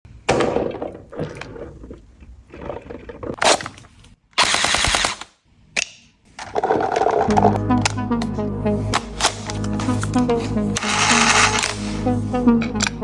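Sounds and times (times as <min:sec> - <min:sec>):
toy blaster firing rapid clicks: 0:04.4 - 0:05.3.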